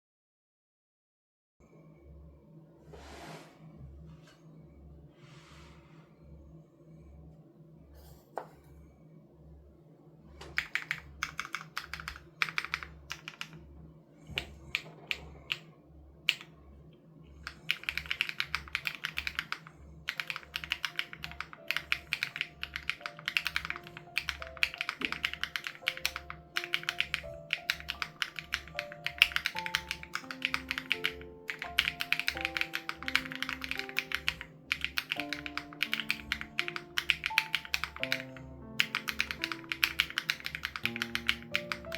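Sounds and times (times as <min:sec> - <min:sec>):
mechanical keyboard typing: 0:10.4 - 0:13.6, 0:14.3 - 0:15.7, 0:16.3 - 0:16.5, 0:17.4 - 0:41.9
quiet background music with beat: 0:10.4 - 0:41.9.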